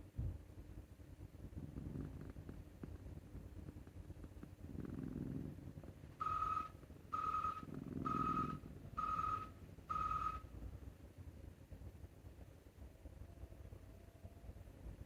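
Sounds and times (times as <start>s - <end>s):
cat snoring: 1.4s - 10.4s
high electronic beeps: 6.2s - 10.4s.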